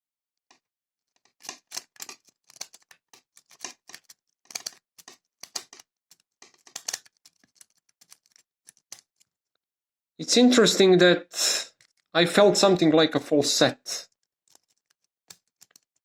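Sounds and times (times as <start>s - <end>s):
lock pick clicking and scraping: 1.2s - 9.4s, 11.7s - 12.1s, 14.1s - 16.0s.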